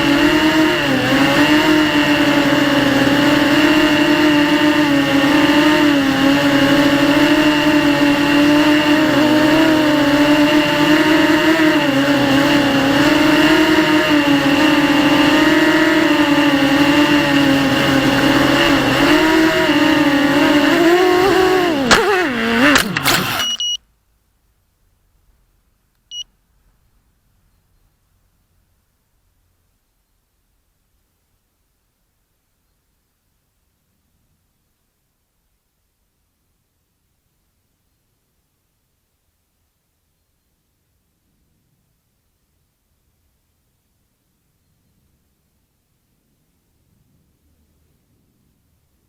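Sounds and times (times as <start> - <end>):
quadcopter motors whining: 0.0 - 23.8
faint beep: 23.3 - 23.8, 26.0 - 26.3.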